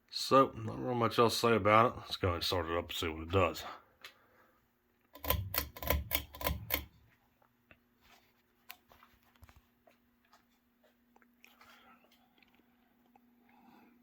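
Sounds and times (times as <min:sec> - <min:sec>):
clattering clicks and knocks: 0:05.2 - 0:07.0.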